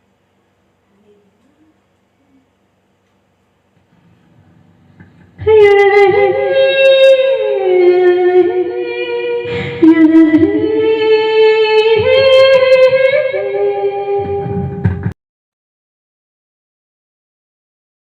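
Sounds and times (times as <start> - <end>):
music backing: 4.2 - 15.1
woman singing wordless held notes: 5.4 - 14.6.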